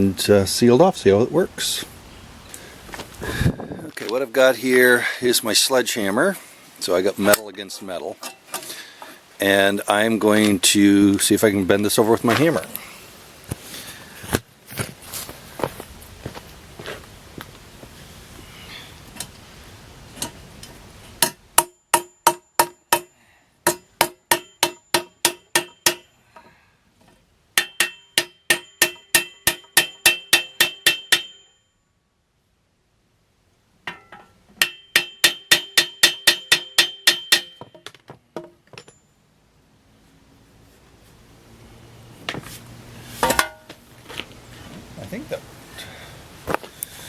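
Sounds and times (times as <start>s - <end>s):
sledgehammer striking metal: 21.2s - 26.2s, 27.6s - 31.6s, 33.9s - 37.9s.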